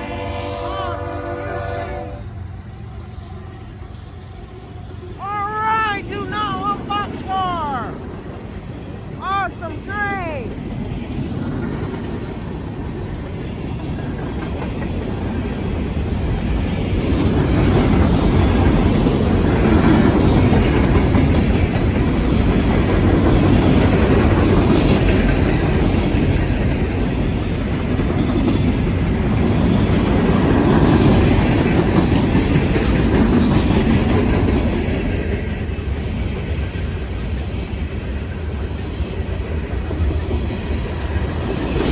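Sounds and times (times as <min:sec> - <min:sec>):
train wheels clattering over rail joints: 0:10.7 - 0:41.9.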